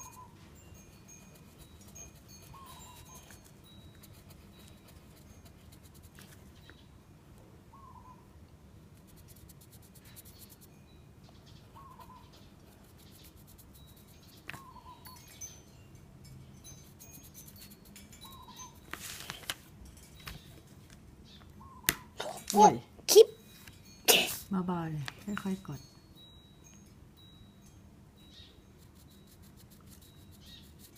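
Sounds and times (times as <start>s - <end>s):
faint bird calls: 0.0s - 0.4s, 7.7s - 8.4s, 11.5s - 13.3s, 21.3s - 22.2s
high chirps: 0.0s - 4.8s, 16.6s - 18.9s
colouring scratching on paper: 0.9s - 6.4s, 9.0s - 10.7s, 12.6s - 14.6s, 16.8s - 19.4s, 28.8s - 30.9s.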